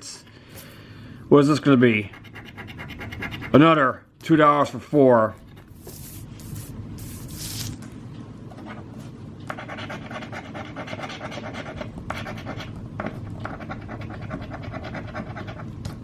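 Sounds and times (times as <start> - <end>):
lottery ticket being scratched: 2.1 - 3.6, 5.4 - 7.8, 9.5 - 15.7.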